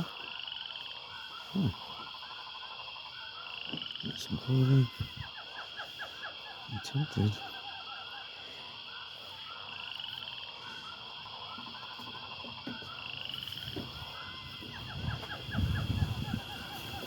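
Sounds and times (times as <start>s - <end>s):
animal calls chirping and trilling: 0.0s - 17.0s.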